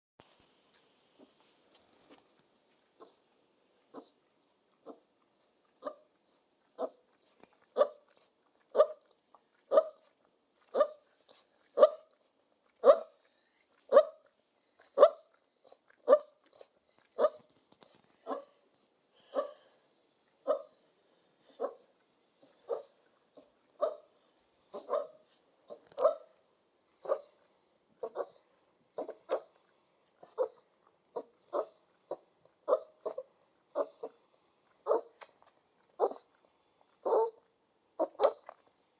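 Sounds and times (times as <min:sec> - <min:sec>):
puppy barking: 0:05.8 - 0:06.1, 0:06.8 - 0:07.0, 0:07.8 - 0:08.1, 0:08.7 - 0:09.1, 0:09.7 - 0:10.1, 0:10.7 - 0:11.1, 0:11.8 - 0:12.1, 0:12.8 - 0:13.2, 0:13.9 - 0:14.3, 0:14.9 - 0:15.4, 0:16.0 - 0:16.4, 0:17.2 - 0:17.5, 0:18.3 - 0:18.6, 0:19.3 - 0:19.6, 0:20.4 - 0:20.8, 0:21.5 - 0:21.9, 0:22.7 - 0:24.1, 0:24.7 - 0:26.4, 0:27.0 - 0:27.4, 0:28.0 - 0:28.4, 0:29.0 - 0:29.6, 0:30.2 - 0:30.6, 0:31.2 - 0:34.2, 0:34.8 - 0:35.2, 0:36.0 - 0:36.3, 0:37.0 - 0:37.4, 0:38.0 - 0:38.5.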